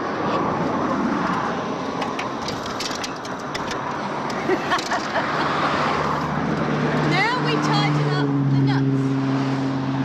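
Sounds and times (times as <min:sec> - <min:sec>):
metal wheel nuts clinking: 0:02.0 - 0:05.3.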